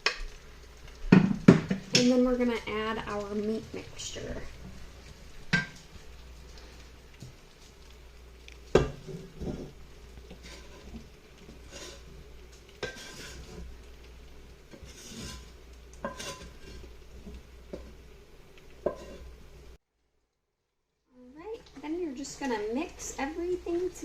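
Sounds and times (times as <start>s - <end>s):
utensil scraping a pan: 8.7s - 13.7s, 14.7s - 17.9s, 18.8s - 19.4s.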